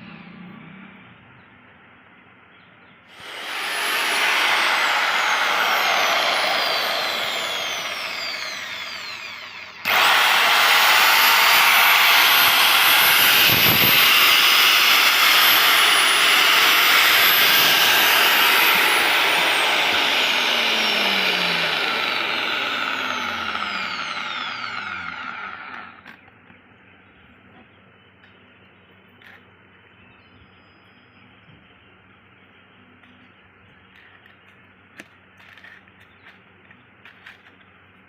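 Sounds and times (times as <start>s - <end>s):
electric chainsaw whining: 3.1s - 26.2s.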